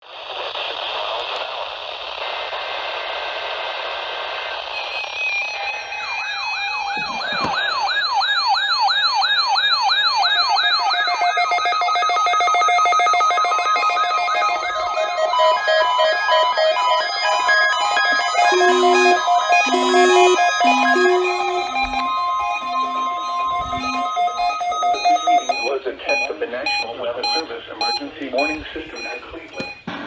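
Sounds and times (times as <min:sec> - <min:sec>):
warbling siren tone: 0:11.0 - 0:26.2
stepped beeping tones: 0:11.3 - 0:29.9.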